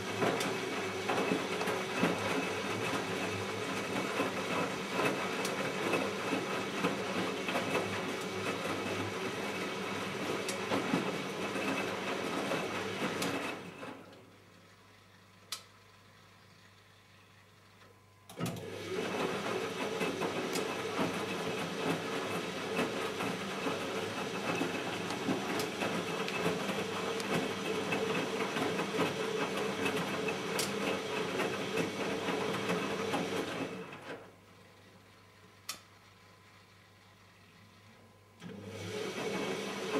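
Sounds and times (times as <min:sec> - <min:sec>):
washing machine drum turning: 0:18.4 - 0:33.4.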